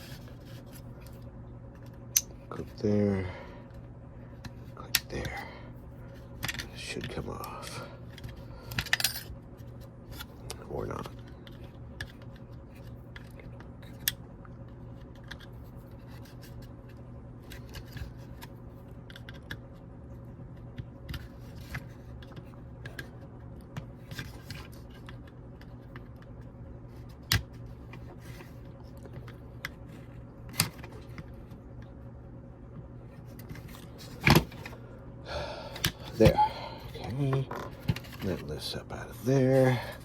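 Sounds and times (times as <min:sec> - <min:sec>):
low hum: 0:25.2 - 0:40.0.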